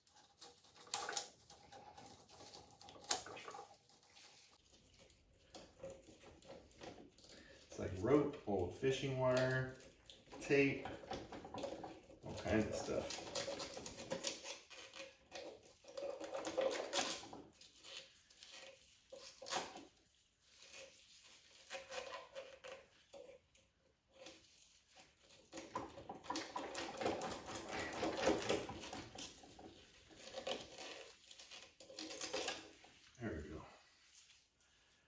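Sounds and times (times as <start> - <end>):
rope scraping and rustling: 11.6 - 25.6, 26.3 - 35.0.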